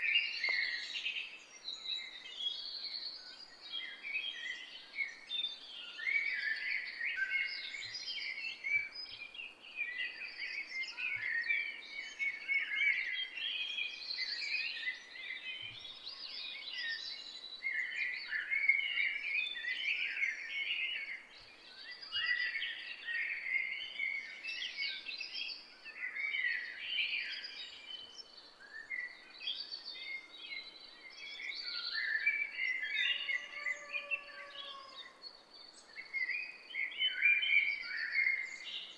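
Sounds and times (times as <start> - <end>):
songbirds singing and chirping: 0.0 - 38.9.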